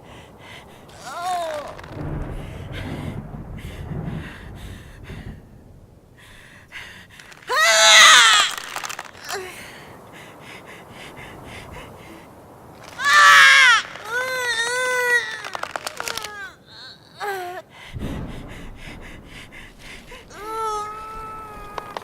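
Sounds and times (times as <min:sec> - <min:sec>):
woman gasping and wheezing: 0:14.0 - 0:22.0.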